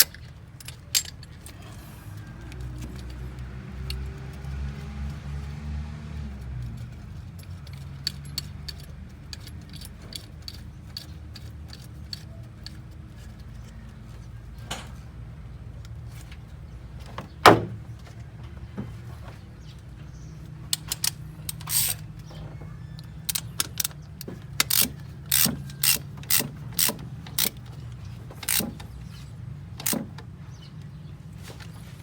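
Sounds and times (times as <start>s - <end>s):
car repair clicks and clanks: 0.0s - 5.6s, 6.2s - 32.0s.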